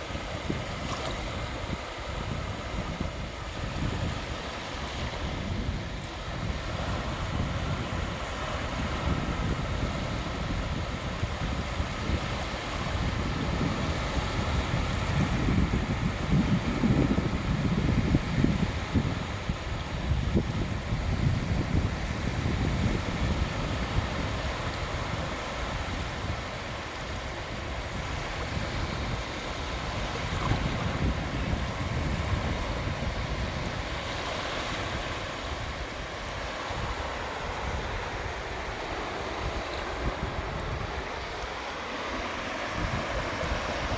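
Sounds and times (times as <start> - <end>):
sea waves washing onto beach: 0.0 - 43.9
wind buffeting microphone: 0.0 - 43.9.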